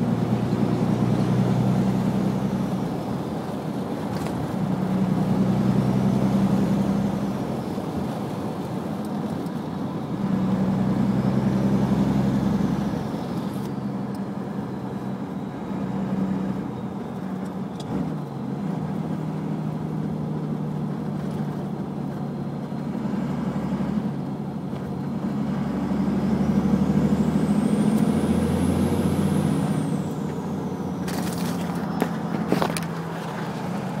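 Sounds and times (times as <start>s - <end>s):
diesel engine running: 0.0s - 34.0s
turbocharger whistling: 25.1s - 32.4s.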